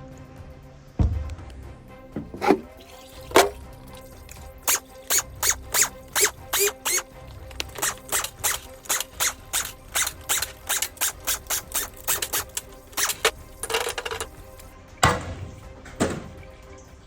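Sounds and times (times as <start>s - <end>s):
metal scraping: 2.2s - 3.6s, 4.6s - 14.7s
ratchet clicking: 4.6s - 14.7s.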